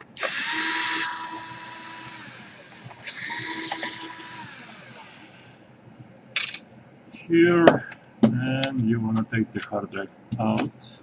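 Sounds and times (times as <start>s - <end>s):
electric screwdriver whirring: 0.2s - 5.6s.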